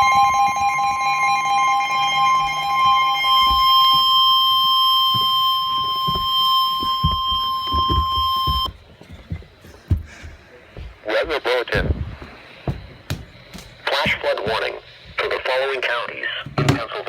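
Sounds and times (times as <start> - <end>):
high warning alarm tone: 0.0 - 8.8.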